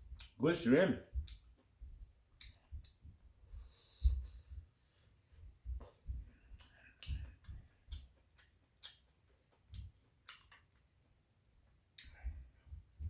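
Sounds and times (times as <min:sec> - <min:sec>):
wet chewing and mouth clicks: 0:00.0 - 0:00.4, 0:01.2 - 0:04.6, 0:05.8 - 0:11.0, 0:11.6 - 0:12.5
soft low thuds: 0:05.4 - 0:08.0, 0:12.1 - 0:13.0.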